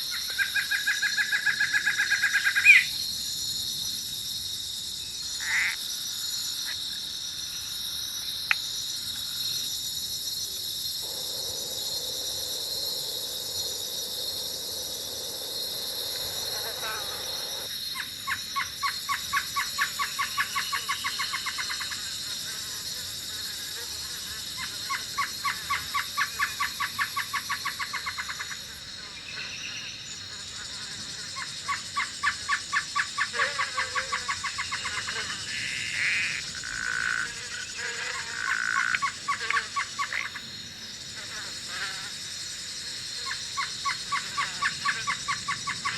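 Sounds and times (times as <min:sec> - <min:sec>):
high insect chorus: 0:00.0 - 0:45.9
rapid pulsed animal calls: 0:09.4 - 0:22.0, 0:42.9 - 0:45.9.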